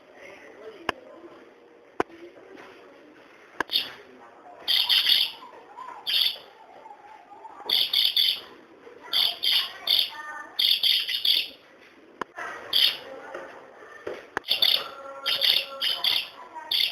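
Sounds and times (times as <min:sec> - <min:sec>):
soft warbling chatter: 0:00.0 - 0:16.9
budgerigar chirping: 0:03.7 - 0:04.0, 0:04.7 - 0:05.5, 0:06.1 - 0:06.5, 0:07.7 - 0:08.5, 0:09.1 - 0:11.6, 0:12.8 - 0:13.0, 0:14.4 - 0:16.9.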